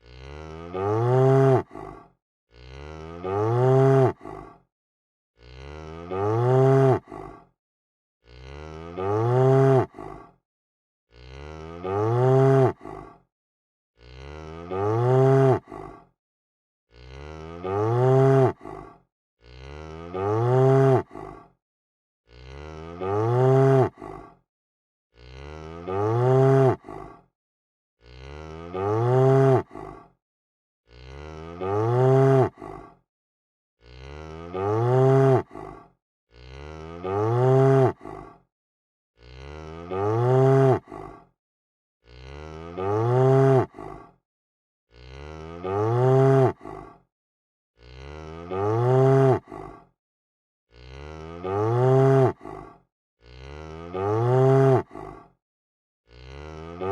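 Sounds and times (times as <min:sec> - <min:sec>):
cow mooing: 0:00.0 - 0:01.6, 0:02.5 - 0:04.2, 0:05.4 - 0:07.1, 0:08.3 - 0:09.9, 0:11.1 - 0:12.8, 0:14.0 - 0:15.7, 0:16.9 - 0:18.6, 0:19.5 - 0:21.1, 0:22.3 - 0:24.0, 0:25.2 - 0:26.8, 0:28.1 - 0:29.7, 0:30.9 - 0:32.6, 0:33.9 - 0:35.4, 0:36.4 - 0:38.0, 0:39.2 - 0:40.9, 0:42.1 - 0:43.7, 0:44.9 - 0:46.6, 0:47.8 - 0:49.5, 0:50.8 - 0:52.4, 0:53.3 - 0:54.9, 0:56.2 - 0:56.9.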